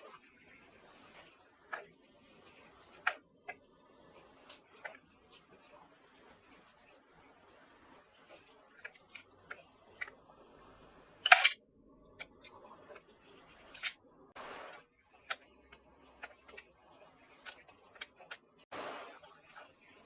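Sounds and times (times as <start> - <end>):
computer parts clicking: 11.2 - 11.6.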